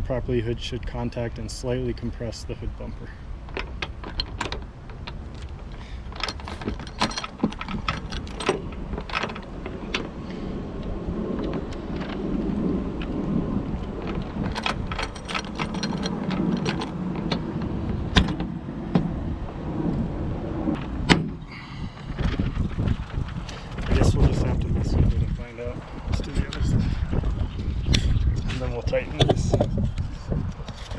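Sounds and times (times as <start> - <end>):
low rumble: 0.0 - 30.9
sharp knocks: 20.8 - 21.5.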